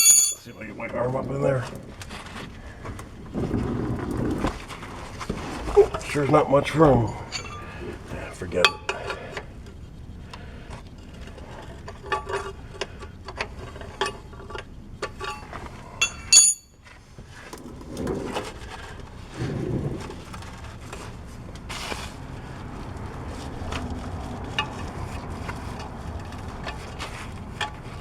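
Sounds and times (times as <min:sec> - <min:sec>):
metal clinking: 0:00.0 - 0:00.7, 0:07.0 - 0:07.9, 0:15.0 - 0:16.7
metal scraping and rubbing: 0:03.4 - 0:09.2, 0:17.3 - 0:22.2.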